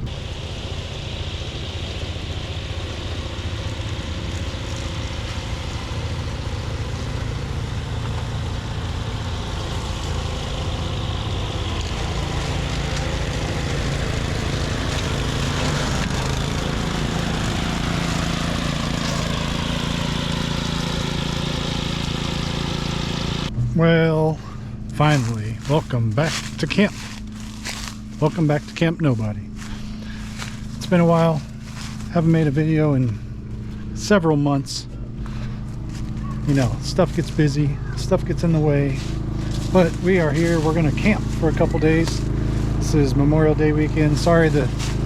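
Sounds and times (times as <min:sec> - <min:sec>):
generator engine running: 0:00.0 - 0:45.0.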